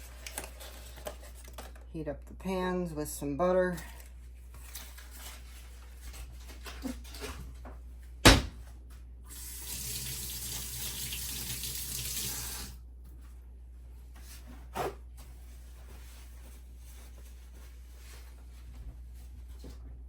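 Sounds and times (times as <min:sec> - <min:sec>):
water running from a tap: 0:09.3 - 0:12.8.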